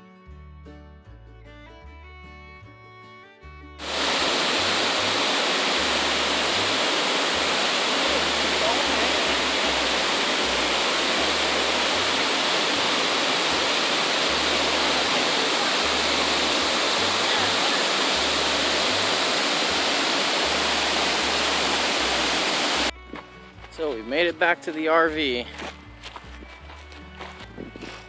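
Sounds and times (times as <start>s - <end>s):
waterfall rushing: 3.8s - 22.9s.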